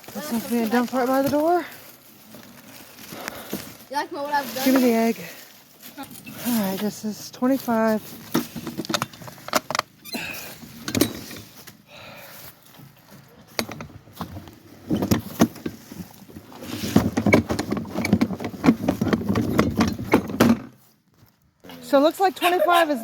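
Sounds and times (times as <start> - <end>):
rustling scrape: 0.0 - 9.6, 10.2 - 13.0, 13.9 - 19.7
mulch knocking and rattling: 7.8 - 10.0, 12.8 - 20.8.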